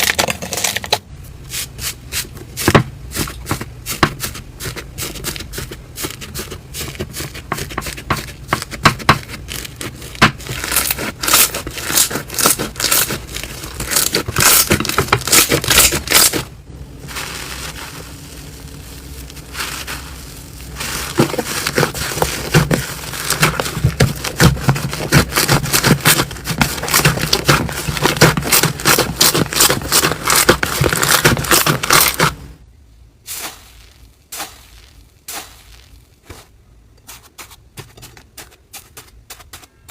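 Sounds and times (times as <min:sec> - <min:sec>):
slime squeezed crackling: 0:09.3 - 0:32.4.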